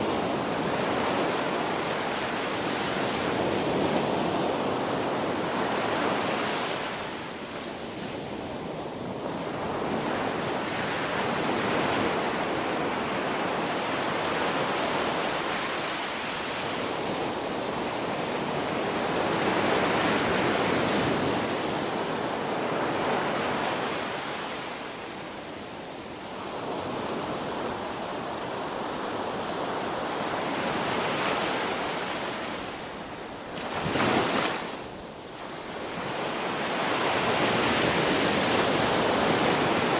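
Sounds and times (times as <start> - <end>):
sea waves breaking on beach: 0.0 - 39.9.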